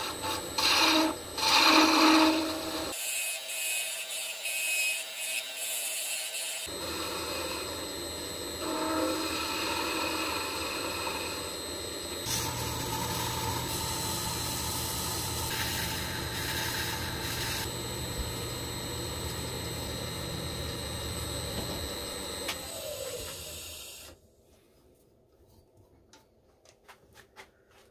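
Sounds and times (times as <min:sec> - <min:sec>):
tool cutting spinning wood: 0:00.0 - 0:03.0, 0:06.6 - 0:24.1
wood lathe whining: 0:00.0 - 0:03.0, 0:06.7 - 0:24.2.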